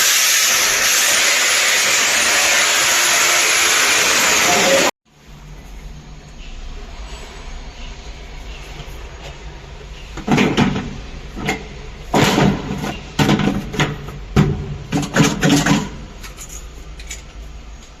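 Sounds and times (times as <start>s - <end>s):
scrapes and knocks of plumbing parts: 10.0s - 17.6s.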